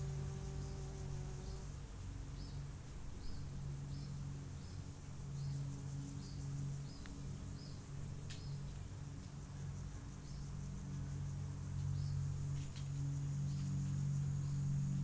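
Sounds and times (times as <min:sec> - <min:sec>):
low hum: 0:00.0 - 0:02.5.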